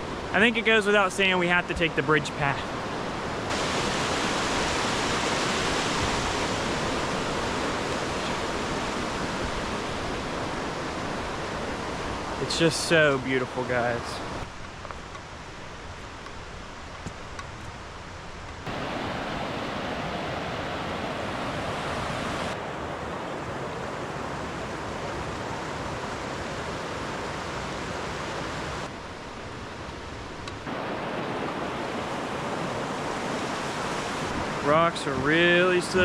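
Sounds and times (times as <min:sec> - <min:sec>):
creek rushing over rocks: 0:03.4 - 0:14.4, 0:30.6 - 0:36.0.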